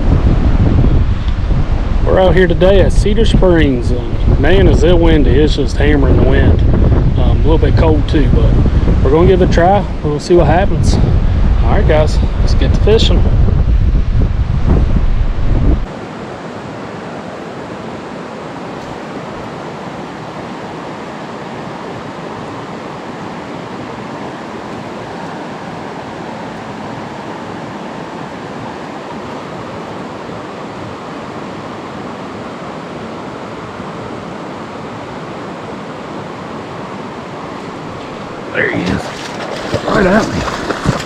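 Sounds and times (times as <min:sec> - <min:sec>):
wind buffeting microphone: 0:00.0 - 0:15.9, 0:37.6 - 0:41.0
stream water flowing: 0:15.9 - 0:41.0.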